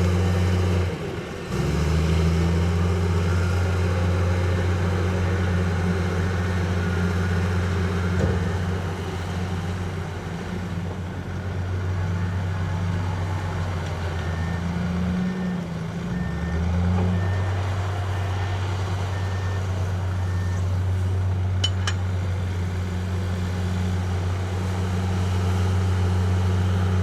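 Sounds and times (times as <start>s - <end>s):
heavy machinery diesel engine: 0.0s - 27.0s
reversing alarm beeping: 14.2s - 18.3s, 19.0s - 19.6s.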